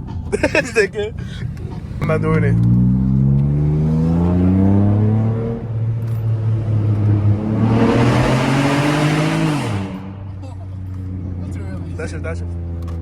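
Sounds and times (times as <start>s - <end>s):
car engine accelerating: 1.4s - 13.0s
exhaust noise rushing: 2.0s - 10.4s.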